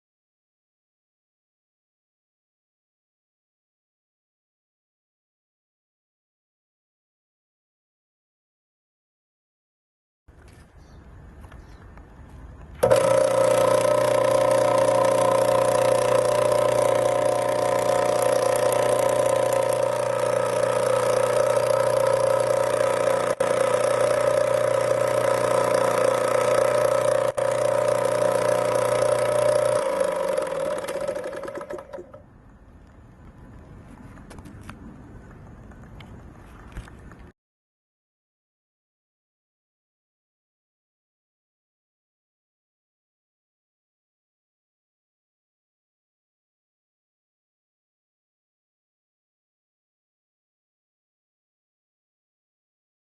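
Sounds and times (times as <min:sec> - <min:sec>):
pump motor humming and whining: 0:12.3 - 0:32.3.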